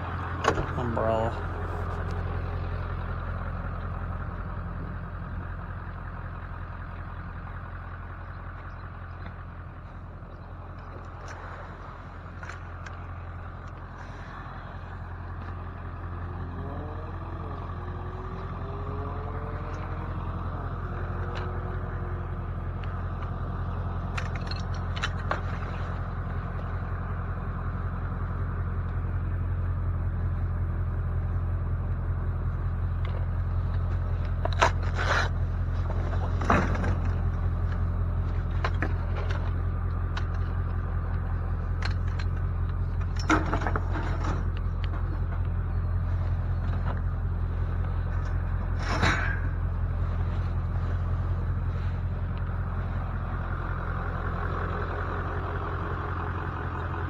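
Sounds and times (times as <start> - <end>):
engine and road drone: 0.0 - 57.0
knocks and rattles: 24.0 - 26.0, 33.0 - 45.7.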